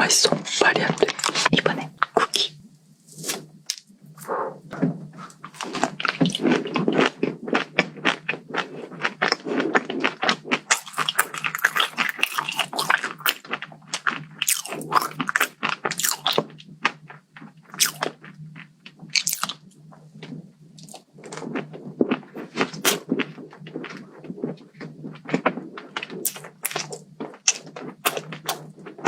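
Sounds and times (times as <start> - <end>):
crunchy cookie chewing: 0.3 - 29.0
mouth sounds: 4.2 - 4.9.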